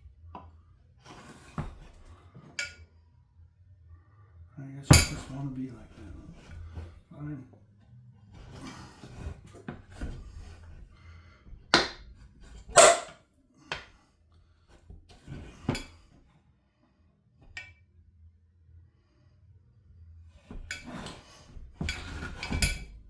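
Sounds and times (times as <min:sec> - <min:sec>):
metal tools clinking and knocking: 0:04.9 - 0:05.5, 0:21.8 - 0:23.0
metal clattering and scraping: 0:20.7 - 0:23.0.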